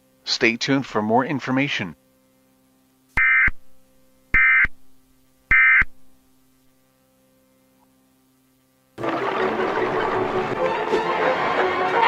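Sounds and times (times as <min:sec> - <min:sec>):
faint steady hum: 0:00.0 - 0:12.0
digital data bursts: 0:03.2 - 0:03.6, 0:04.4 - 0:04.8, 0:05.5 - 0:05.9.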